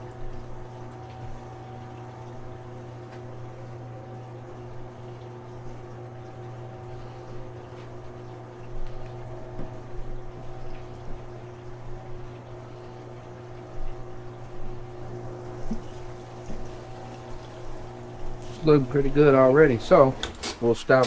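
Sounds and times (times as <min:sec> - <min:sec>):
machine motor humming: 0:00.3 - 0:21.0
water running into drain: 0:10.4 - 0:21.0.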